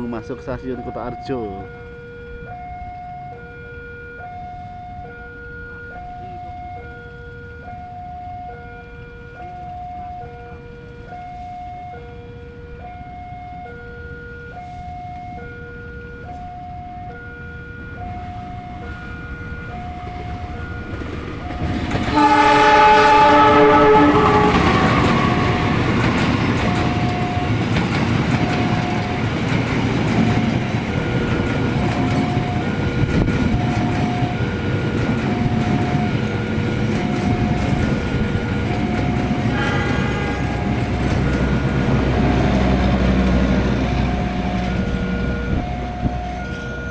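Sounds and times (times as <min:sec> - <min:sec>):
two-tone crossing alarm: 0:00.0 - 0:46.9
train rumble and wheel clatter: 0:04.2 - 0:46.9
locomotive horn blast: 0:22.0 - 0:27.6, 0:38.7 - 0:46.8.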